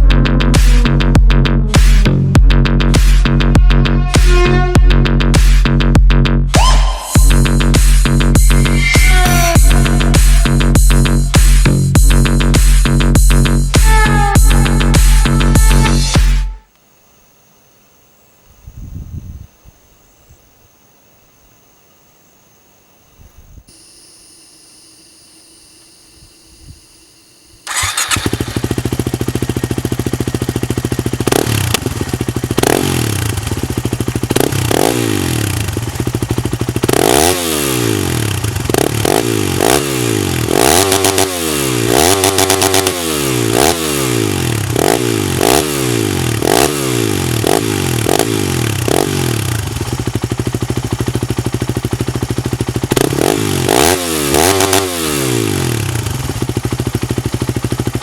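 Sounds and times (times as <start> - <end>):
quick throttle blips: 0.0 - 5.6, 6.6 - 16.6, 25.8 - 58.0
motorcycle engine idling and revving: 0.0 - 16.5, 27.6 - 58.0.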